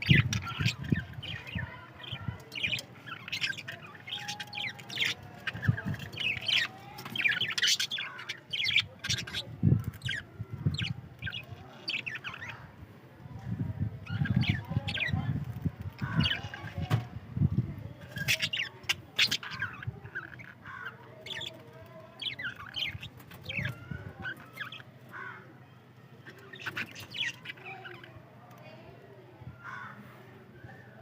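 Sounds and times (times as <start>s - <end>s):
budgerigars chirping: 0.0s - 12.6s, 16.0s - 16.8s, 18.0s - 21.6s, 22.2s - 24.9s, 26.3s - 28.1s.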